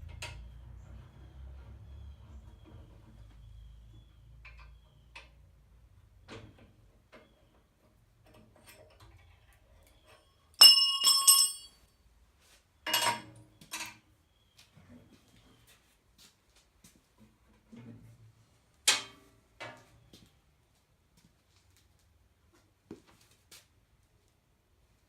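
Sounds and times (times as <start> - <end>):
dull metal clanks: 10.6 - 11.7
sharp metallic clanks: 10.6 - 11.7.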